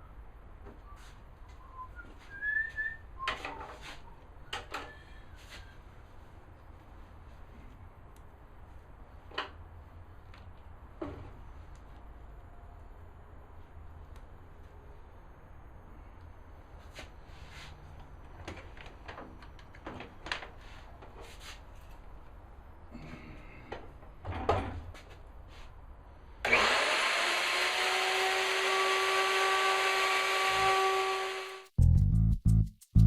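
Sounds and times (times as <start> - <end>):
wood and tools clicking and knocking: 3.2 - 5.0, 9.2 - 9.6, 18.0 - 22.0
power tool motor running: 26.4 - 31.7.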